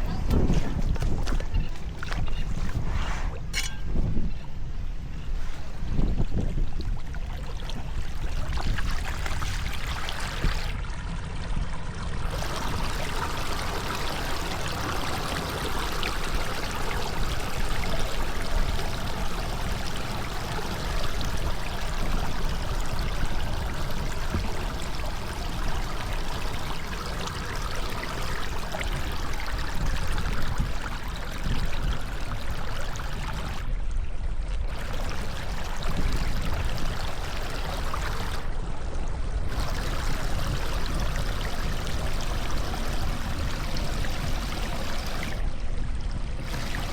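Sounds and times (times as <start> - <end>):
floodwater rushing: 7.0 - 10.8, 12.2 - 33.7, 34.6 - 38.6, 39.4 - 45.6, 46.3 - 46.9.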